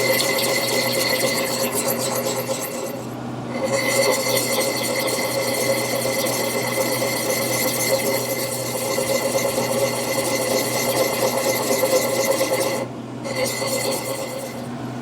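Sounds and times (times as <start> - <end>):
sharpening stone scraping axe: 11.7 - 14.7.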